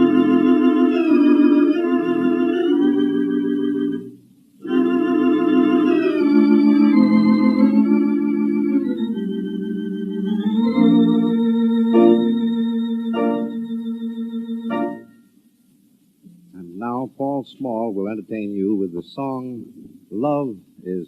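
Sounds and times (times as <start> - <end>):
theatre organ playing chords: 0.0 - 15.3.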